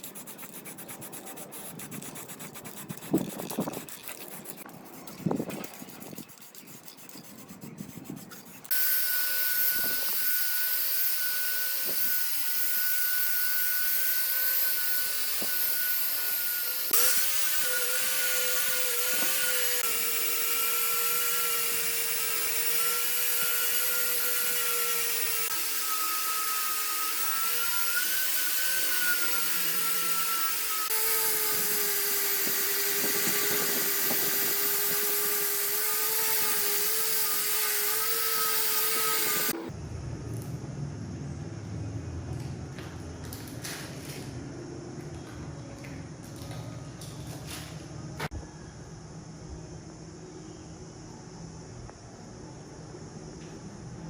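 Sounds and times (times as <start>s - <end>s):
electric power tool grinding: 0.0s - 39.7s.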